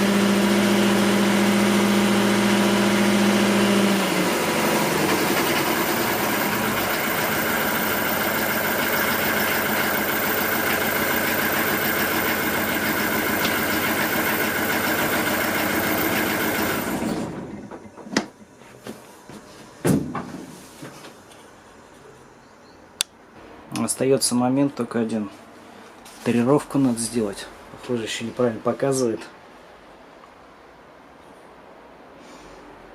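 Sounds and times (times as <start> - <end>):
boat engine running: 0.0 - 18.0.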